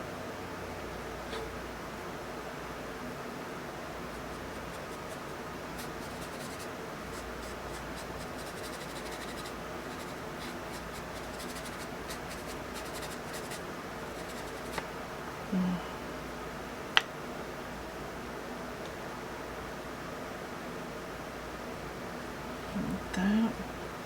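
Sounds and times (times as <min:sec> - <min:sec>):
charcoal scratching on paper: 0:04.0 - 0:14.8.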